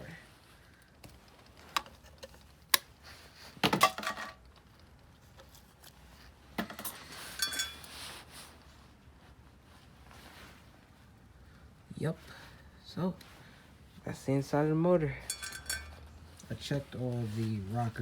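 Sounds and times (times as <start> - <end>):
metal tool clinking on engine parts: 6.8 - 7.9, 15.2 - 16.0.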